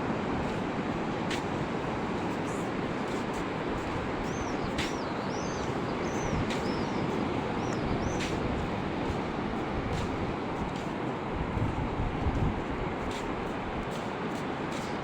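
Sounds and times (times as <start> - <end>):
sea waves on a beach: 0.0 - 15.0
bird chirping: 4.3 - 8.3.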